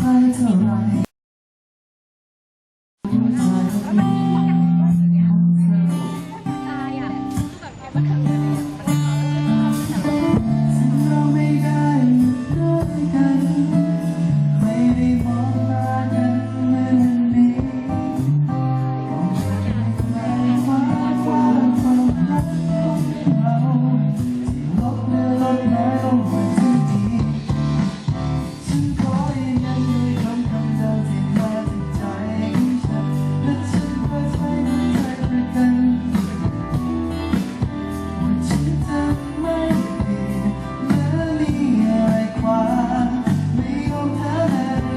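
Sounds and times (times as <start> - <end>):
guitar: 0.0 - 1.1, 3.0 - 44.9
man singing: 0.0 - 1.1, 3.0 - 6.7, 8.2 - 44.9.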